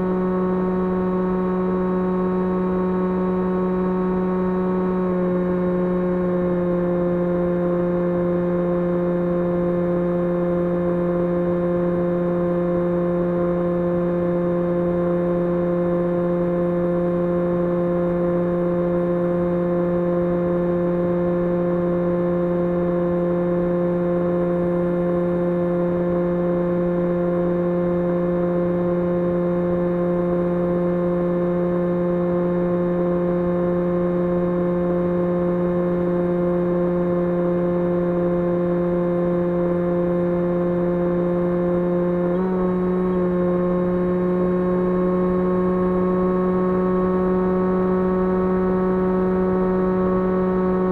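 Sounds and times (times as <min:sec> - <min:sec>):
electric motor hum: 0:29.8 - 0:50.9.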